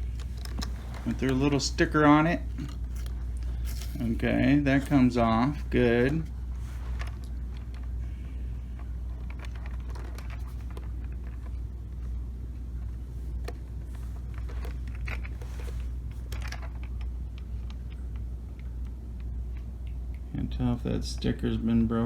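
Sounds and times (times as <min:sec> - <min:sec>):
steady low hum: 0:00.0 - 0:22.0
plastic controller clicks and rustles: 0:08.8 - 0:12.1, 0:12.8 - 0:19.3.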